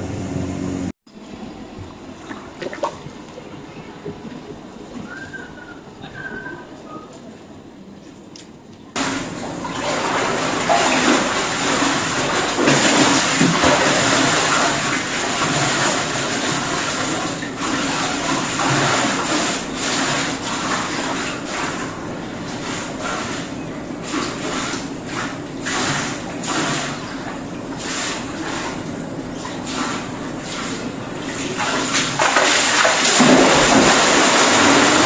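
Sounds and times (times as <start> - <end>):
water gushing: 9.0 - 35.0.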